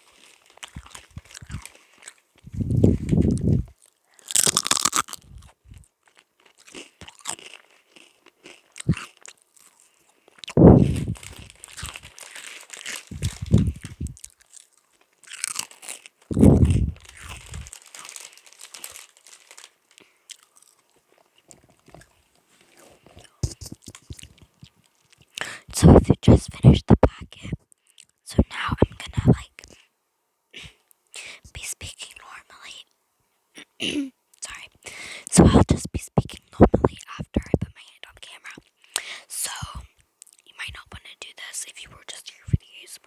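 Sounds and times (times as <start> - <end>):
crisps chewing and crunching: 0.0 - 29.8, 34.3 - 37.7, 38.5 - 42.7
heavy low thumps: 2.5 - 3.7, 10.6 - 11.5, 13.1 - 14.2, 16.3 - 17.7.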